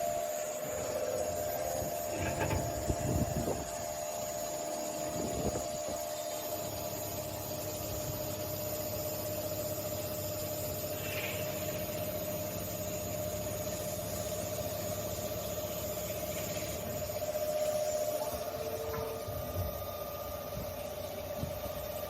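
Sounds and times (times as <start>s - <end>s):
constant machine whine: 0.0s - 22.0s
machining center hum and hiss: 0.0s - 22.0s
brief lower tone: 17.5s - 20.3s.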